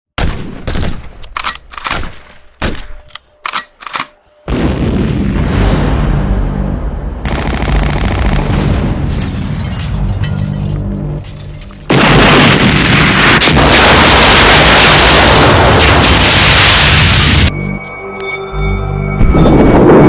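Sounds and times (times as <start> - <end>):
sharp gunshots: 0.2 - 1.2, 7.2 - 9.1.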